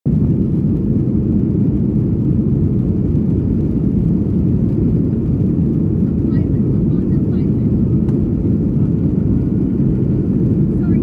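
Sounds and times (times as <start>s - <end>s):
jet engine rumble in cabin: 0.1s - 11.0s.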